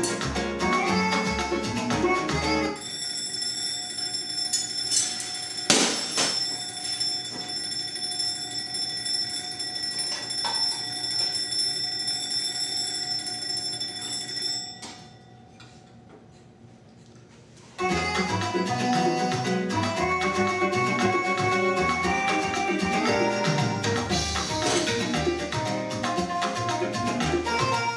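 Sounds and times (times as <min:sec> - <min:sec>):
alarm clock ringing: 0:02.7 - 0:15.5.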